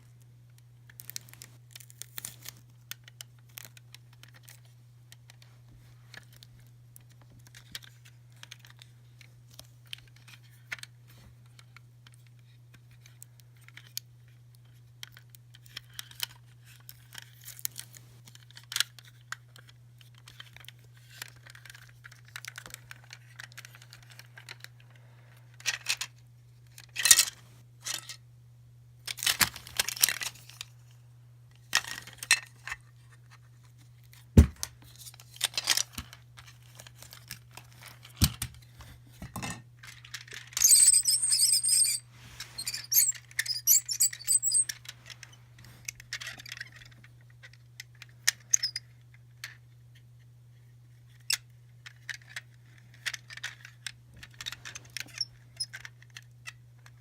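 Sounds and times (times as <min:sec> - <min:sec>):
faint steady hum: 0:00.0 - 0:57.0
plastic toys clicking and rattling: 0:18.3 - 0:24.8, 0:29.1 - 0:30.7, 0:39.8 - 0:49.6, 0:51.1 - 0:57.0.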